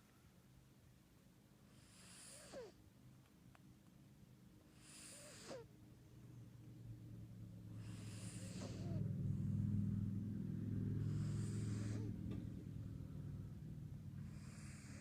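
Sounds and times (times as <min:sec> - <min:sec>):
cat snoring: 0:01.7 - 0:02.8, 0:04.7 - 0:05.7, 0:07.8 - 0:12.2, 0:14.2 - 0:15.0.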